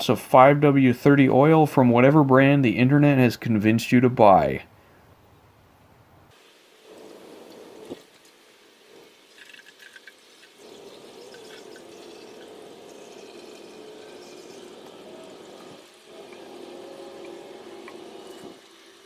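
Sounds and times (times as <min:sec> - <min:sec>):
oil pouring from a bottle: 0:06.8 - 0:18.8.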